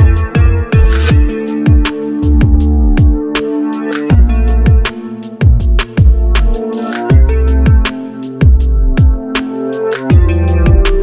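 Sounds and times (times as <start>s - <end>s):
deep bass hits: 0.0s - 3.4s, 4.1s - 7.8s, 8.4s - 9.2s
hi-hat ticks: 0.9s - 4.6s, 5.2s - 7.6s, 9.1s - 10.3s.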